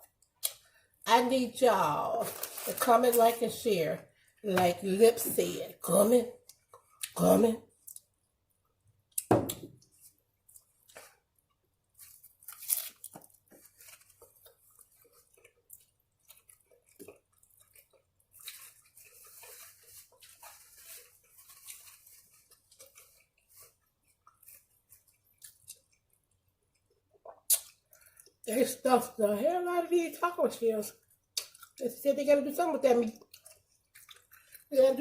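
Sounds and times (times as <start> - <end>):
crunching taco shells: 7.8 - 28.4, 31.0 - 31.8, 33.0 - 35.0
chewing: 9.9 - 28.4, 33.1 - 34.7.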